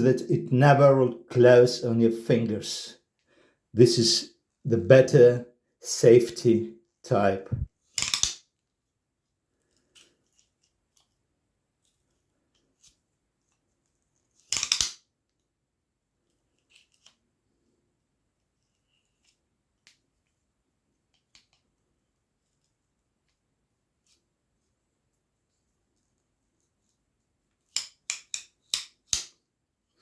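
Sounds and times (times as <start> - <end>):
loud sharp knife snap: 8.0 - 8.4.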